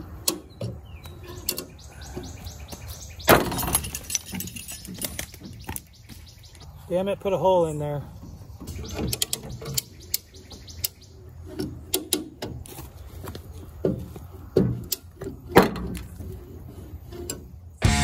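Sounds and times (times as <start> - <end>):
sharp clicks and metal knocks: 0.0 - 1.8, 8.6 - 12.8
loud metal clunks: 3.2 - 5.6.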